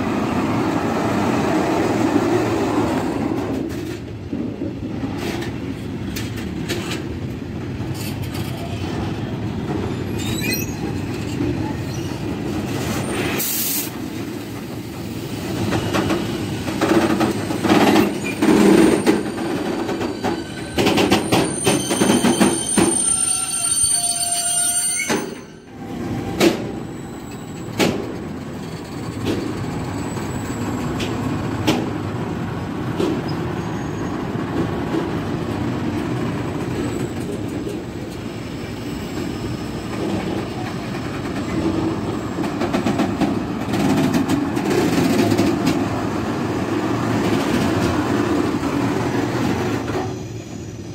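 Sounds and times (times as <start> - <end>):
train rolling past: 0.0 - 50.9
high wheel squeal: 9.9 - 12.3, 18.0 - 27.8, 33.3 - 34.4, 49.8 - 50.9.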